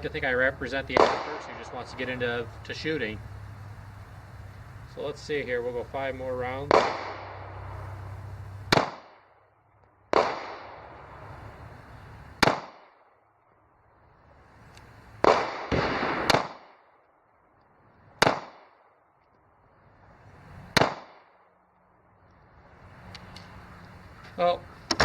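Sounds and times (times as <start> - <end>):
pistol shots: 0.8 - 2.4, 6.7 - 7.8, 8.7 - 9.3, 10.1 - 10.9, 12.4 - 13.0, 15.2 - 17.0, 18.2 - 18.9, 20.7 - 21.4.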